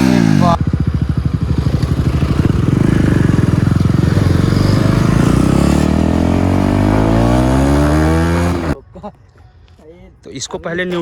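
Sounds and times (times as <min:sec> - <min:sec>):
motorcycle engine revving: 0:00.0 - 0:08.8.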